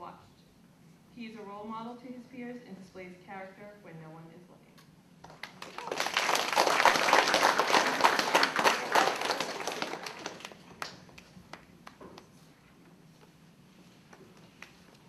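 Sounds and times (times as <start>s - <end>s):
audience applauding: 5.2s - 11.2s.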